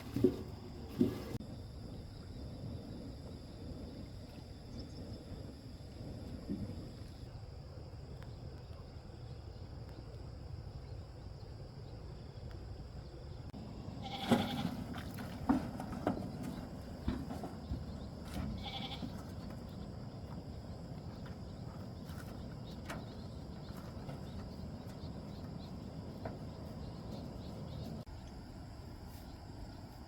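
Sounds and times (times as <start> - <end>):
bleat-like animal calls: 14.0 - 14.8, 18.6 - 19.1.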